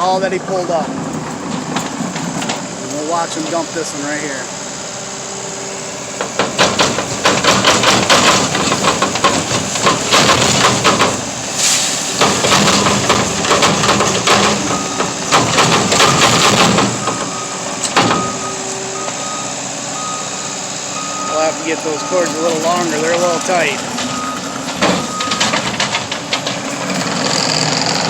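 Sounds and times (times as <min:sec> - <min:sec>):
skid steer engine running: 0:00.0 - 0:28.0
gravel clattering out of bucket: 0:06.2 - 0:17.2.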